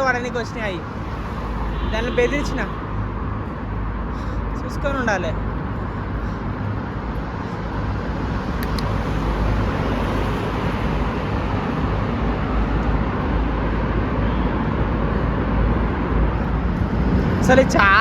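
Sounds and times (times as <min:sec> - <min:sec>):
road and traffic noise: 0:00.0 - 0:18.0
wind rumble on microphone: 0:00.0 - 0:18.0
faint clicks: 0:08.6 - 0:08.9.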